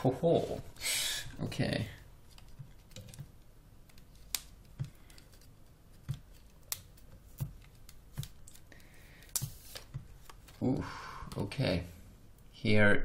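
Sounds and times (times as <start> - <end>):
packaging rustling: 2.2 - 10.7.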